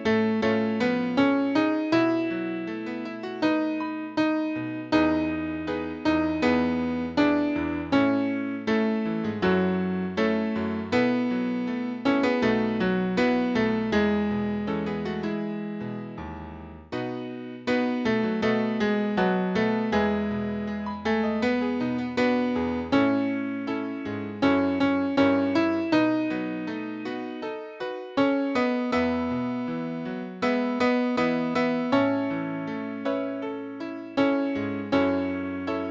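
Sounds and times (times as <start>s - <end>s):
slow gentle piano melody: 0.0s - 35.9s.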